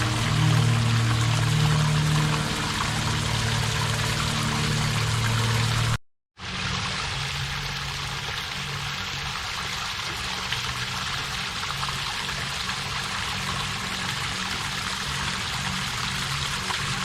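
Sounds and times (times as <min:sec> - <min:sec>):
waterfall rushing: 0:00.0 - 0:06.0.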